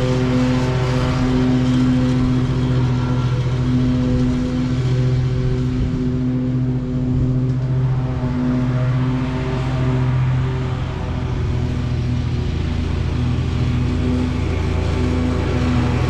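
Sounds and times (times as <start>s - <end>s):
lawn mower cutting grass: 0.0s - 16.0s.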